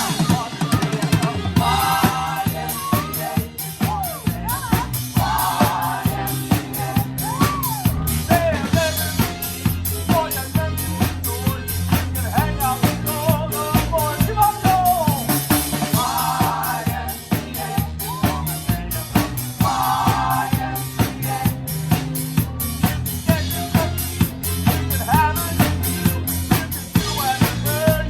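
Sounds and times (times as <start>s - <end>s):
drum kit kick and snare beat: 0.0s - 28.0s
live band playing pop-rock: 0.0s - 28.0s.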